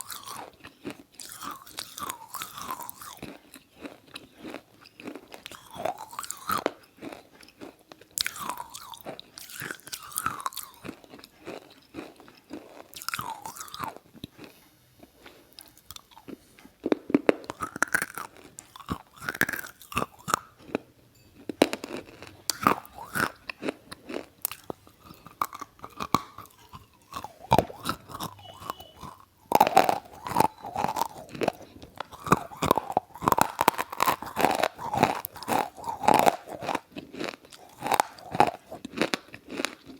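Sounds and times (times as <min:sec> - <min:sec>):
wet crunching and crackling: 0:21.7 - 0:39.9.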